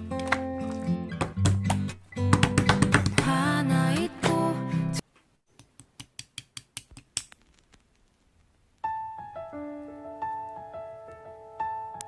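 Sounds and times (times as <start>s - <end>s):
slow piano melody: 8.8s - 12.0s.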